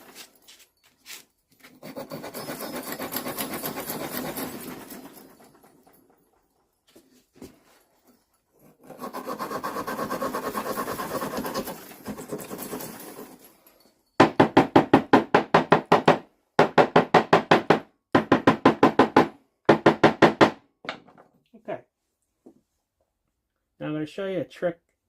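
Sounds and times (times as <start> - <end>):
wire brush scrubbing metal: 1.7 - 4.9, 8.9 - 12.8.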